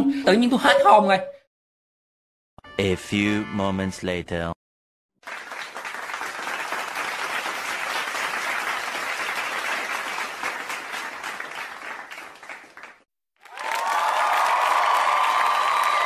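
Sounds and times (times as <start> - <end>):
crowd applauding: 5.2 - 16.0.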